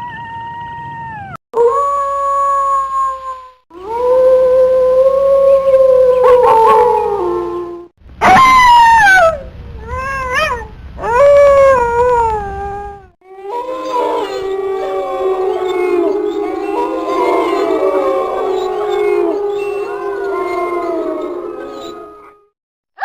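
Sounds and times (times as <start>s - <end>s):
wolves howling: 1.6s - 9.4s, 10.3s - 22.6s.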